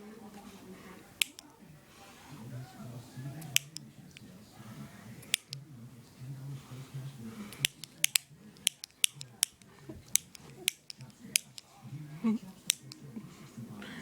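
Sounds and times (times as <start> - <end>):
sharp irregular clicks: 1.2 - 1.5, 3.4 - 3.8, 5.2 - 5.6, 7.5 - 11.7, 12.7 - 13.0.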